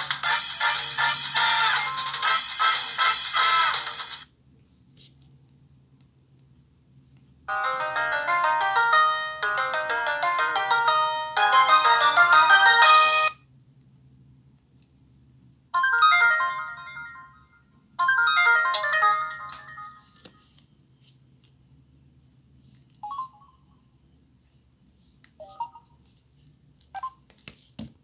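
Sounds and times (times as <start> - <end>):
phone ringtone jingle: 0.0 - 3.7, 7.5 - 13.4, 15.8 - 20.1.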